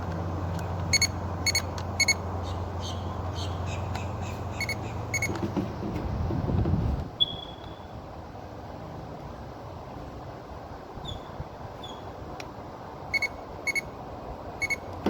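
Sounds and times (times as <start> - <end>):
circuit tester beeping: 0.9 - 2.2, 4.6 - 5.4, 13.1 - 13.9, 14.6 - 14.9.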